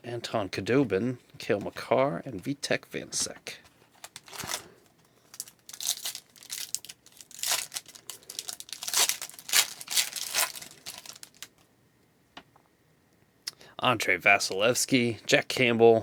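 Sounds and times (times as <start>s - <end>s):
wrapper torn and crinkled: 4.0s - 4.7s, 5.3s - 11.5s.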